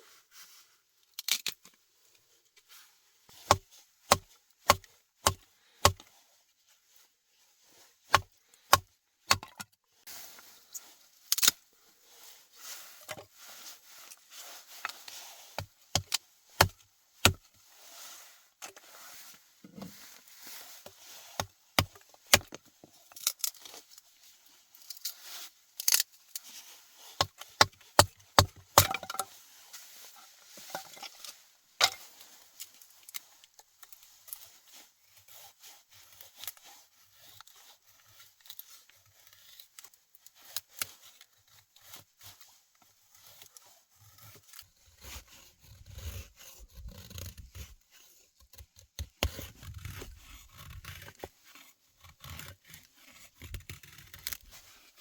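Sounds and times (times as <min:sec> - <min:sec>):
rustling and handling noise: 0:00.0 - 0:55.0
sharp knocks and cracks: 0:27.2 - 0:29.3.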